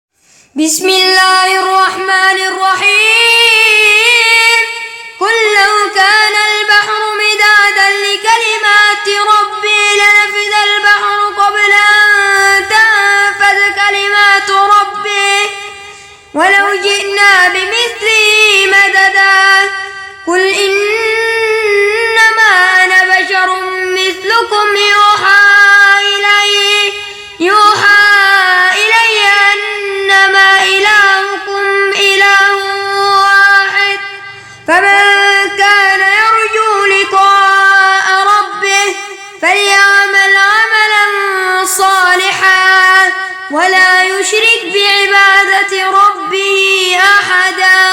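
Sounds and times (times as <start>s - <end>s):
person chanting recitation: 0.6s - 47.9s.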